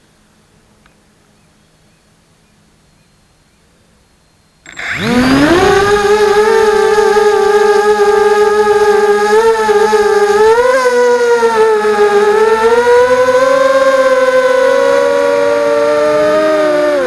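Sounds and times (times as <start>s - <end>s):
drone motors whining: 4.6s - 17.0s.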